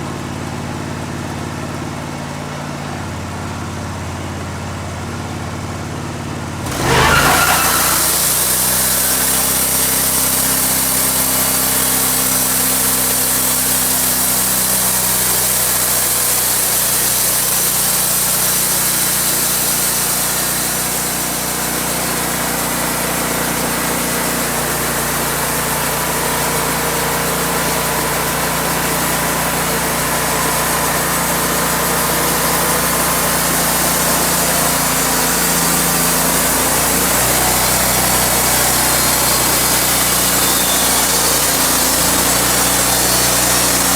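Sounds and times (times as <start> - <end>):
engine humming: 4.9 - 15.4, 20.8 - 43.9
saw cutting wood: 6.6 - 43.9.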